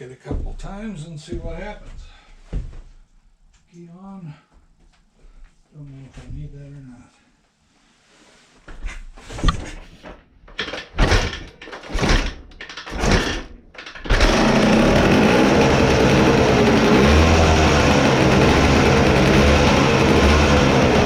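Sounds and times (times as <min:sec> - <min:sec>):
motorcycle kick-start kicks: 0:10.5 - 0:21.0
two-stroke engine running: 0:12.8 - 0:21.0.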